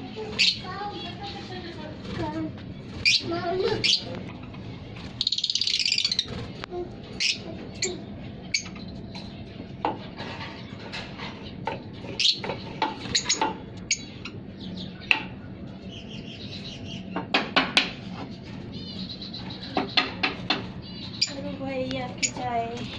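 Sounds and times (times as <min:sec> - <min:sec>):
small birds chirping: 0:00.0 - 0:22.9.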